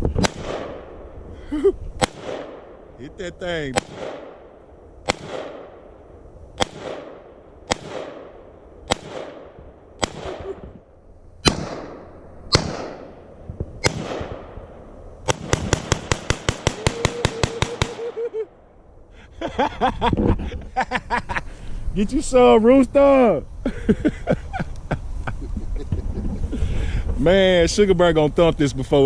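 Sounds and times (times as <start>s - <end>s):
rapid gunfire: 0.2s - 0.9s, 2.0s - 2.8s, 3.7s - 4.4s, 5.1s - 5.8s, 6.6s - 10.6s, 11.4s - 13.1s, 13.8s - 14.5s, 15.3s - 18.1s
gunshots with echo: 0.2s - 1.2s, 2.0s - 3.0s, 3.7s - 6.0s, 6.6s - 10.6s, 11.4s - 13.2s, 13.8s - 18.2s.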